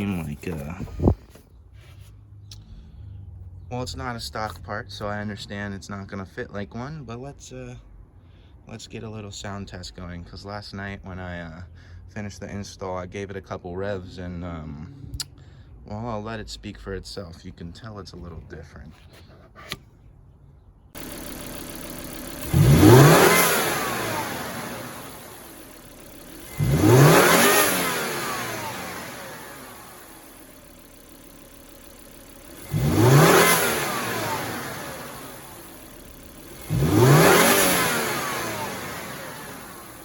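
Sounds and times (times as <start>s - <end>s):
car engine idling and revving: 0.0s - 5.7s, 20.9s - 40.0s.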